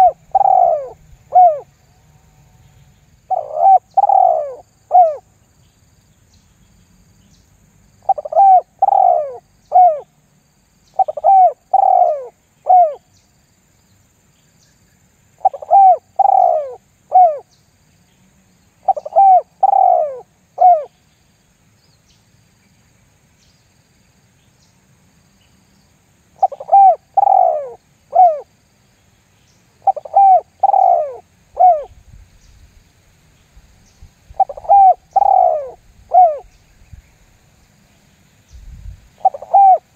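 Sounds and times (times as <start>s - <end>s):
dove cooing: 0.0s - 1.7s, 3.3s - 5.3s, 8.0s - 10.1s, 11.0s - 13.1s, 15.4s - 17.5s, 18.8s - 21.0s, 26.4s - 28.5s, 29.8s - 32.0s, 34.4s - 36.5s, 39.2s - 39.9s.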